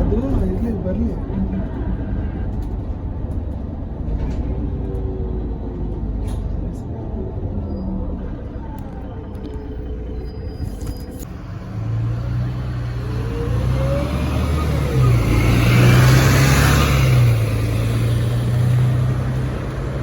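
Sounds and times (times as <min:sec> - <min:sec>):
bus diesel engine accelerating: 0:00.0 - 0:20.0
gearbox whine: 0:07.5 - 0:15.4.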